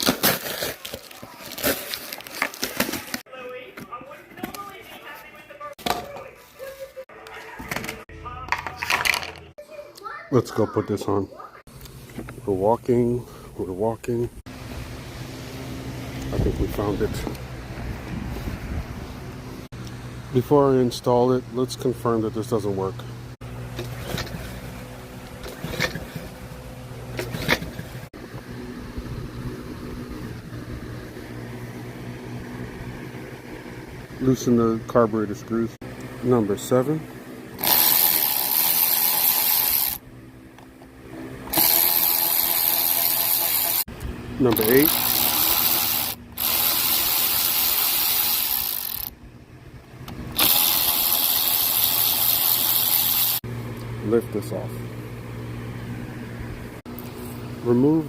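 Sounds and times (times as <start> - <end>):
lawn mower engine humming: 11.7 - 58.0
ratchet wrench clicking: 37.6 - 40.0, 41.5 - 43.8, 44.6 - 49.1, 50.4 - 53.4.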